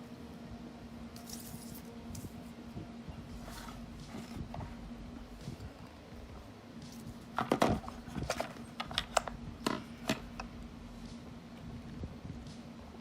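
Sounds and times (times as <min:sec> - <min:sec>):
faint steady hum: 0:00.0 - 0:13.0
hard objects clicking and knocking: 0:07.4 - 0:10.5.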